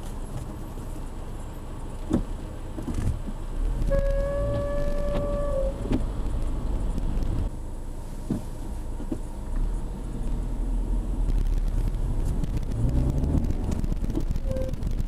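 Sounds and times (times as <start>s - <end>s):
road and engine rumble: 0.0s - 15.0s
car squeaks: 3.8s - 6.1s, 12.5s - 15.0s.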